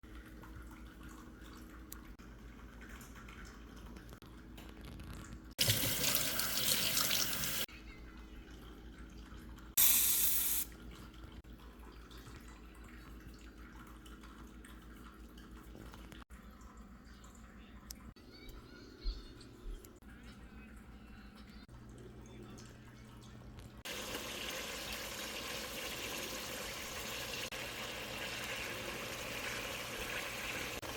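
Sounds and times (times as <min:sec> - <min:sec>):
kitchen tap running into sink: 0:05.6 - 0:07.7, 0:08.8 - 0:17.0, 0:23.8 - 0:30.9.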